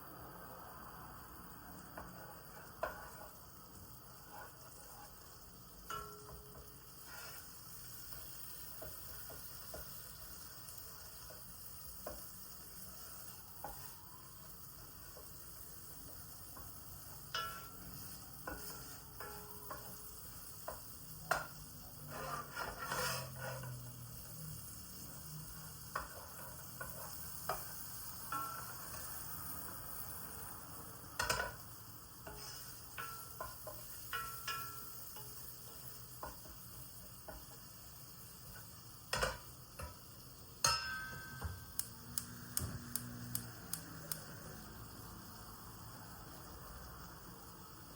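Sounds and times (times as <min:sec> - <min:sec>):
faint frying sizzle: 0:00.0 - 0:47.9
utensils clinking on pots: 0:16.6 - 0:24.2, 0:25.2 - 0:29.2, 0:31.2 - 0:36.7, 0:38.5 - 0:40.0, 0:40.6 - 0:41.8.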